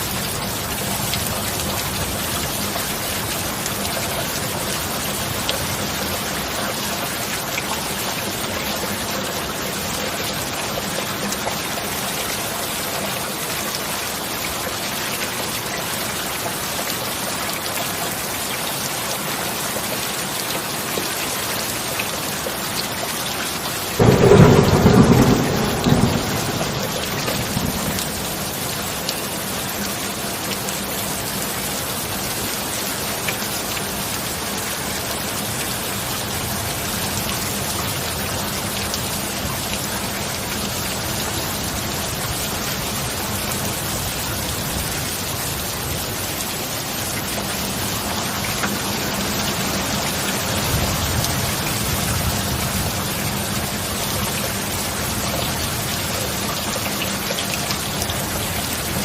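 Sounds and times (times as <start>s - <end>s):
steady rain falling: 0.0s - 59.0s
thunderclap rumbling: 24.0s - 28.7s.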